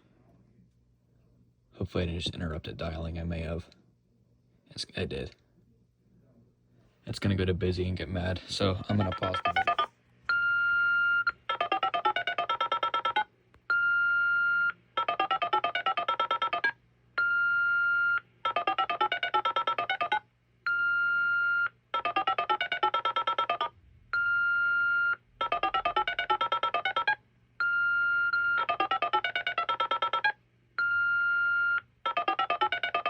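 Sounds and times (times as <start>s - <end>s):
steady phone line tone: 8.8s - 33.0s
rapid touch-tone digits: 8.9s - 33.0s.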